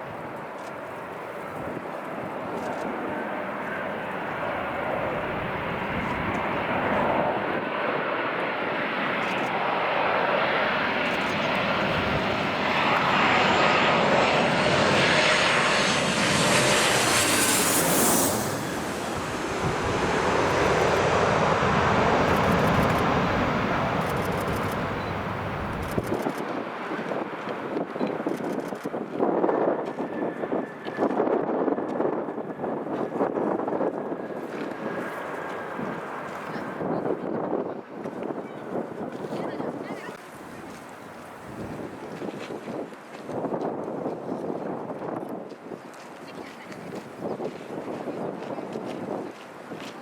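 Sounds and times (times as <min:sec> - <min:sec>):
airliner engines passing: 0:00.0 - 0:50.0
high engine whine: 0:12.0 - 0:26.4.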